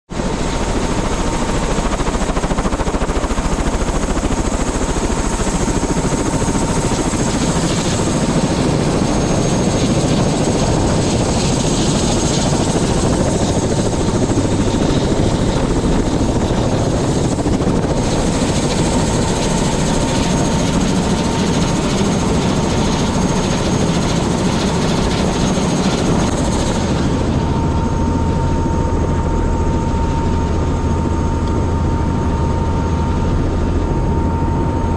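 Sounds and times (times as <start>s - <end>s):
helicopter rotor and engine: 0.1s - 34.9s.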